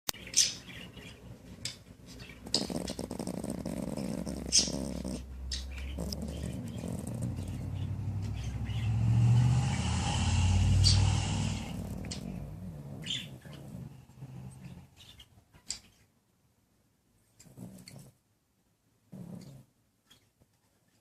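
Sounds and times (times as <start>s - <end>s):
small dog snoring: 2.4s - 5.3s, 5.9s - 7.8s, 9.4s - 14.9s, 17.4s - 18.1s, 19.1s - 19.7s.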